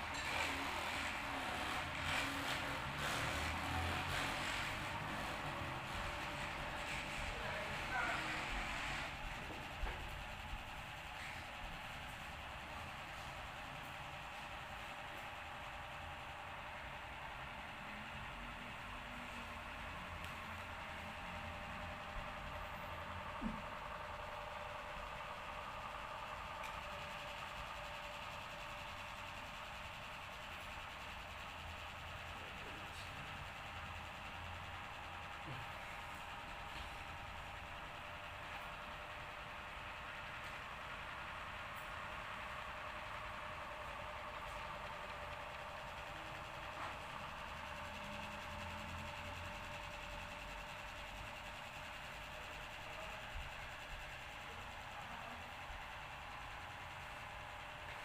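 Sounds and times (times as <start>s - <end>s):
small motor humming: 0.0s - 10.2s
steady mechanical hum: 0.0s - 58.0s.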